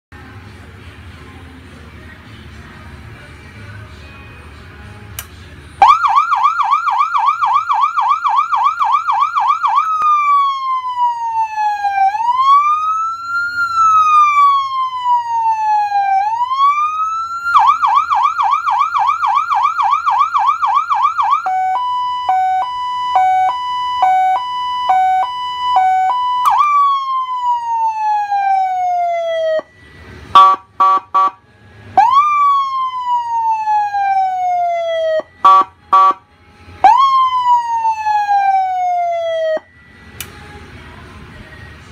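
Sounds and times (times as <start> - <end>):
electronic siren cycling tones: 5.8 - 31.3.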